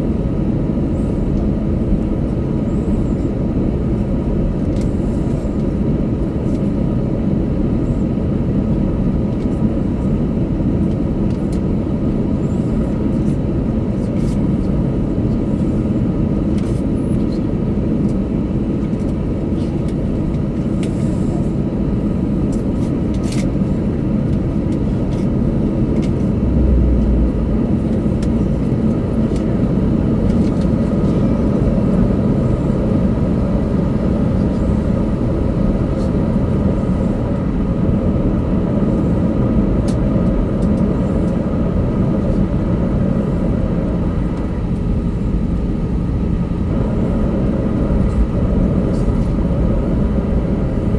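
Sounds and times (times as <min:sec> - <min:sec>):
aircraft cabin rumble: 0:00.0 - 0:50.9
faint whine: 0:25.1 - 0:37.8, 0:41.3 - 0:50.9.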